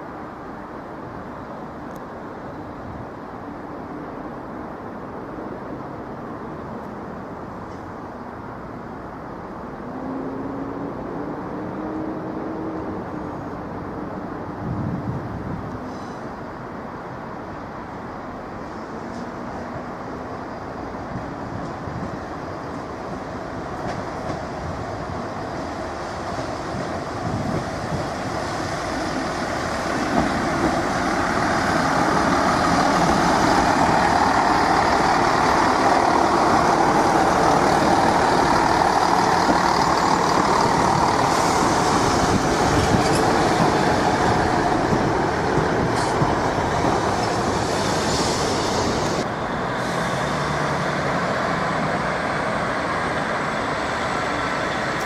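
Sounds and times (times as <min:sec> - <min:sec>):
train passing: 0:00.0 - 0:55.0.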